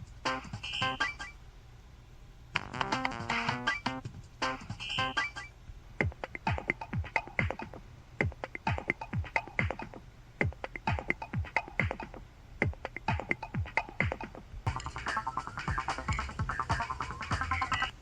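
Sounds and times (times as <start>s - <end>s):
electronic dance ringtone: 13.2s - 18.0s.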